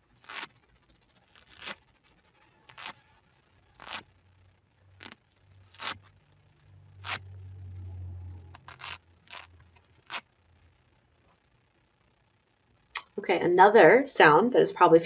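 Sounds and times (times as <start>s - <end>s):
velcro ripping: 0.1s - 4.2s, 5.0s - 6.2s, 7.0s - 7.3s, 8.5s - 10.3s.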